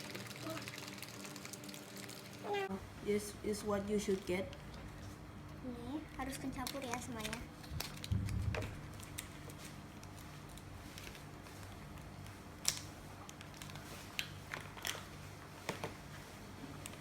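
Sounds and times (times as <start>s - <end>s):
faint low hum: 0.0s - 9.4s.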